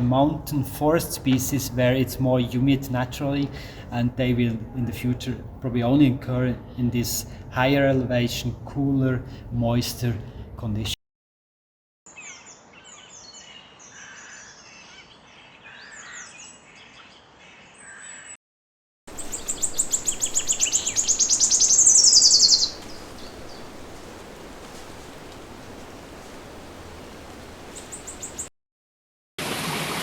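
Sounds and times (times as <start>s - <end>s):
bird rapid trill: 19.1s - 23.7s
background hiss: 19.1s - 28.5s
birds chirping: 19.1s - 28.5s.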